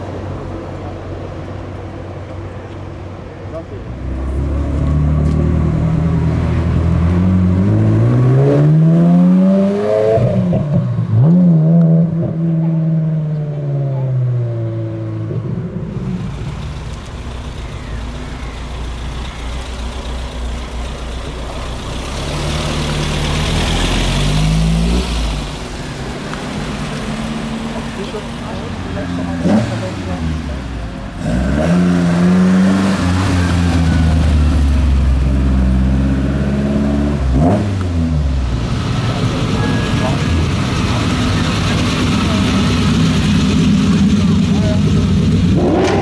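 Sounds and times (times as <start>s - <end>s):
car engine accelerating: 1.2s - 46.0s
low engine rumble: 10.5s - 31.5s, 32.2s - 46.0s.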